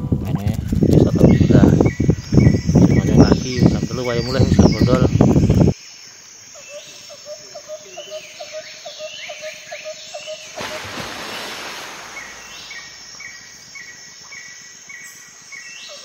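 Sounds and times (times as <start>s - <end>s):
insect hum: 0.0s - 16.0s
small animals calling: 6.5s - 10.9s.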